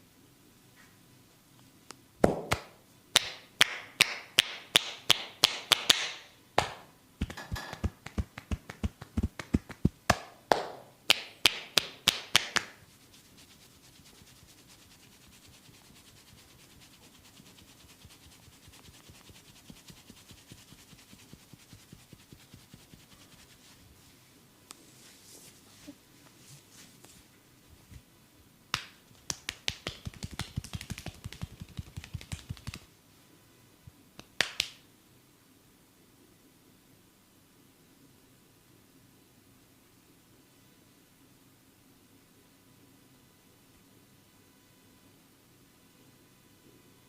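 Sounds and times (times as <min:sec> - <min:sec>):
hands slapping on body: 0:02.2 - 0:12.8, 0:28.7 - 0:32.9, 0:34.2 - 0:34.8
faint soft sounds: 0:12.7 - 0:34.1.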